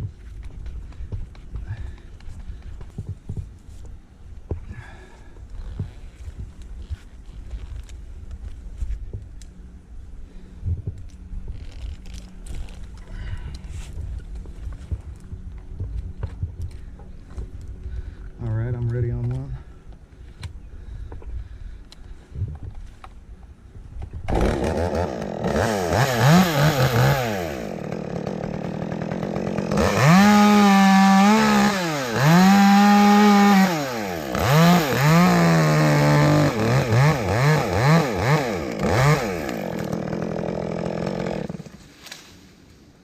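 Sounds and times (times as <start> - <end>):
chainsaw revving: 24.3 - 41.8.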